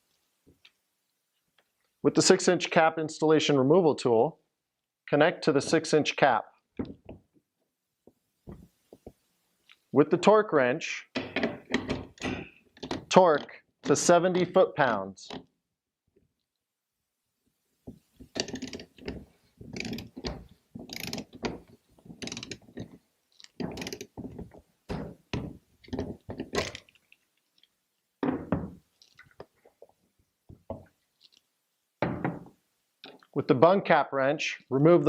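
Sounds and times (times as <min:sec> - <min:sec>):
torque wrench ratcheting: 0:18.3 - 0:18.9, 0:19.7 - 0:20.2, 0:20.9 - 0:21.6, 0:22.2 - 0:22.6, 0:23.6 - 0:24.1.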